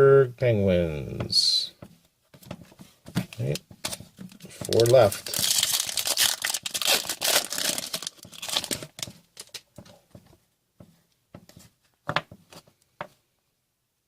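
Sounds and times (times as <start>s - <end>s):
cards clicking and tapping: 2.4s - 5.1s
foil wrapper crinkling and tearing: 3.9s - 9.7s.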